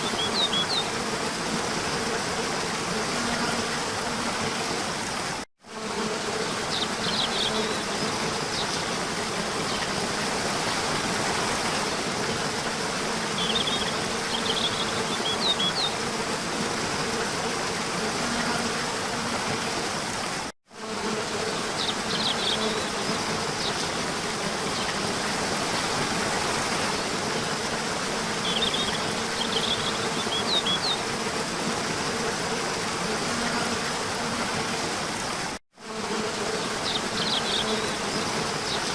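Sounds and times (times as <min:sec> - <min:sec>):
small birds chirping: 0:00.0 - 0:01.0, 0:06.4 - 0:08.9, 0:13.3 - 0:16.0, 0:21.3 - 0:24.0, 0:28.4 - 0:31.1, 0:36.7 - 0:38.9.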